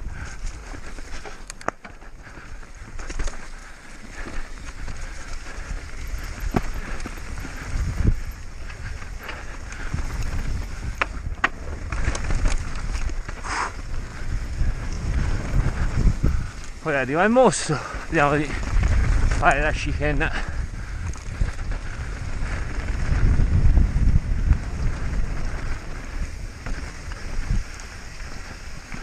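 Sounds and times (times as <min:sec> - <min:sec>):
tyres on dirt and rock: 0:00.0 - 0:29.0
wind rumbling on microphone: 0:00.0 - 0:29.0
bike knocks and rattles: 0:05.7 - 0:08.4, 0:09.2 - 0:13.4.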